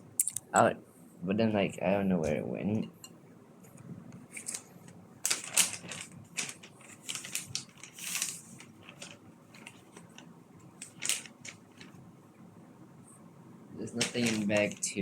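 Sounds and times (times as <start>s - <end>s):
plastic bag rustling: 4.3s - 12.0s, 13.8s - 15.0s
plastic pieces clicking and clattering: 5.3s - 10.0s, 10.8s - 12.0s, 14.0s - 14.8s.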